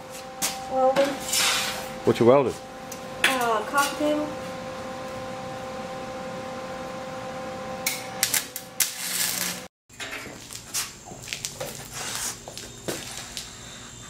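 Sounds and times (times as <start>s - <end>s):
electric welder humming: 0.0s - 9.7s
welding arc crackling and hissing: 8.2s - 9.7s.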